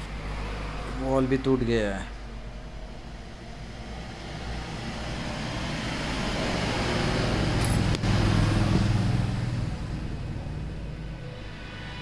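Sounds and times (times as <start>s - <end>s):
vehicle engine running: 2.2s - 11.7s.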